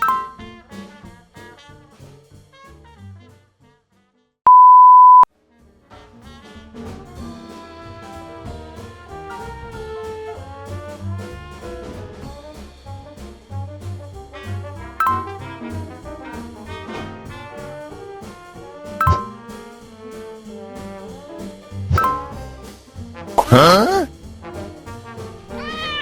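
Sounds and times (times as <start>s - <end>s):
loud steady beep: 0.0s - 0.4s, 4.5s - 5.3s, 15.0s - 15.4s, 19.0s - 19.4s, 21.9s - 22.4s
jazzy brass music: 0.0s - 4.3s, 5.3s - 26.0s.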